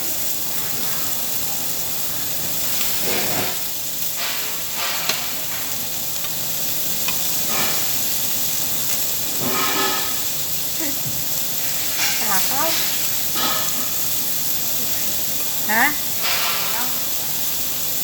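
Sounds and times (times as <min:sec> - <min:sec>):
meat sizzling on a grill: 0:00.0 - 0:18.0.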